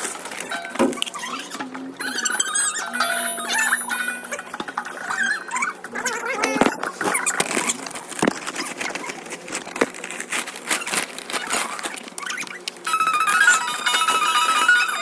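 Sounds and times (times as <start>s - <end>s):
wrapping paper rustling: 0.0s - 1.6s, 6.7s - 15.0s
clicks and squeaks: 0.0s - 9.8s, 10.6s - 15.0s
tinkly electronic melody: 0.4s - 5.6s, 12.9s - 15.0s.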